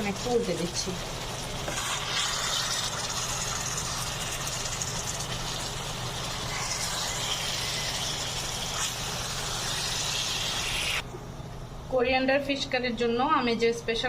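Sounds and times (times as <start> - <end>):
fish sizzling in a pan: 0.0 - 11.0.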